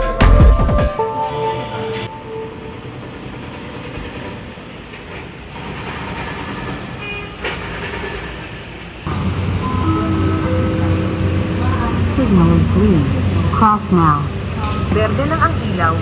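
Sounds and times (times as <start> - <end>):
city street traffic rumble: 1.6 - 16.0.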